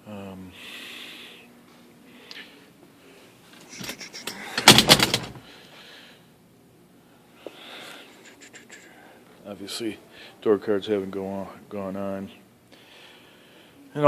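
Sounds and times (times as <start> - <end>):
metallic knocks of door latching: 4.6 - 5.4.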